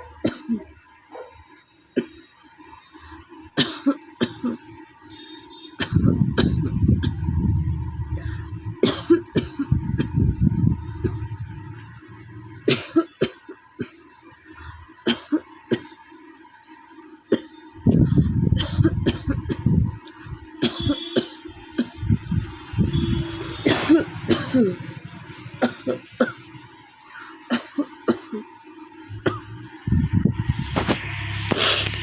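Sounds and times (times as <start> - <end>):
faint steady hum: 0.0 - 32.0
woman coughing: 0.2 - 0.7, 3.6 - 4.6, 5.8 - 7.2, 8.8 - 10.2, 12.7 - 13.6, 15.1 - 15.9, 18.6 - 19.7, 20.6 - 22.0, 23.6 - 24.8, 25.6 - 26.4, 27.5 - 28.4.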